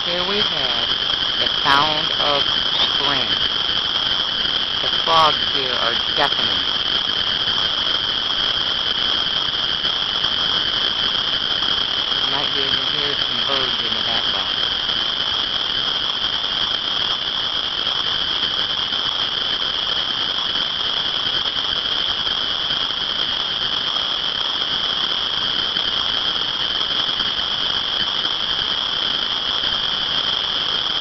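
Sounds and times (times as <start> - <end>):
chorus of frogs calling: 0.0 - 7.0, 12.2 - 14.6.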